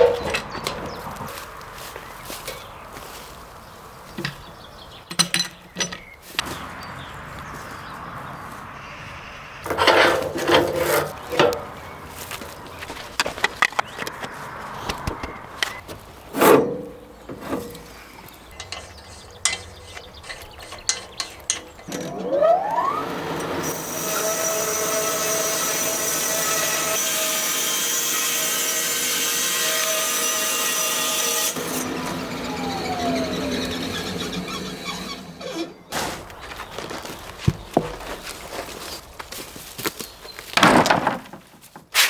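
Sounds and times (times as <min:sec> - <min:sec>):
saw whining and cutting wood: 0:00.0 - 0:02.5, 0:09.6 - 0:14.1, 0:15.6 - 0:38.0
wood knocking and clattering: 0:34.9 - 0:38.8, 0:40.5 - 0:41.9.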